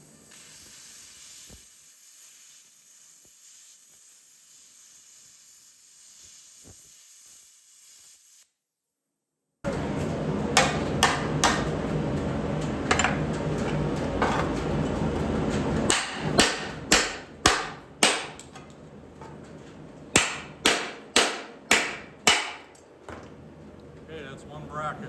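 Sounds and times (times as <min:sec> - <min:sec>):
steady hiss: 0:00.0 - 0:08.5
hammer striking steel: 0:10.5 - 0:11.8, 0:15.9 - 0:18.6, 0:20.1 - 0:22.8.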